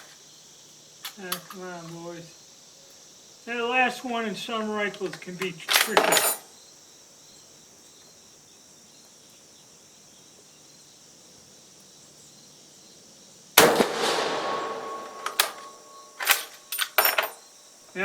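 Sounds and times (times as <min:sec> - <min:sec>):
faint steady hiss: 0:00.0 - 0:18.0
rifle shot with echo: 0:13.6 - 0:16.6.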